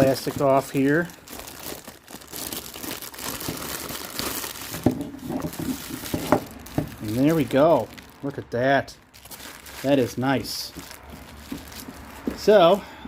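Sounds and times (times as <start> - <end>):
plastic wrapping crinkling and tearing: 0.0 - 12.8.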